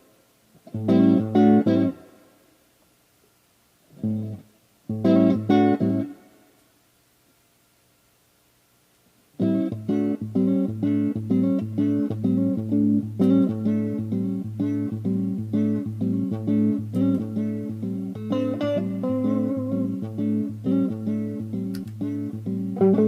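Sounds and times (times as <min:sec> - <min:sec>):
clean electric guitar picking: 0:00.7 - 0:02.2, 0:04.0 - 0:06.3, 0:09.4 - 0:23.0.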